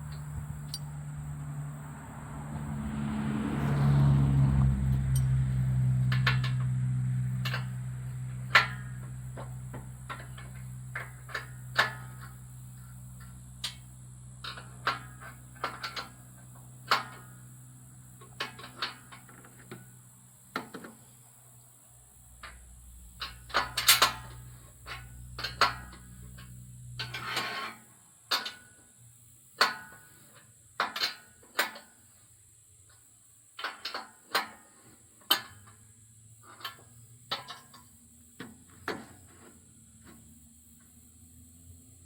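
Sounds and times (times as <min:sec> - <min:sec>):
metal tools clanking on steel: 0:04.9 - 0:17.4, 0:18.2 - 0:19.8, 0:22.4 - 0:28.8, 0:36.4 - 0:39.5.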